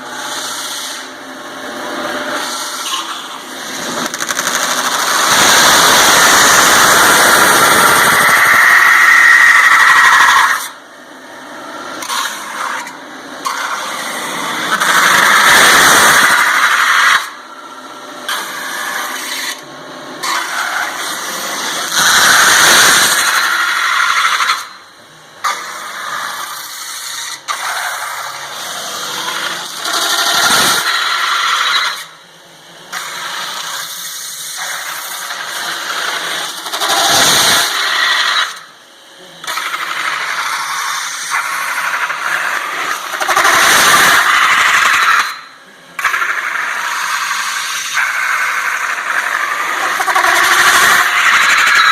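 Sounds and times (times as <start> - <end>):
lathe roller squealing on metal: 7.6 - 10.7, 49.8 - 51.9.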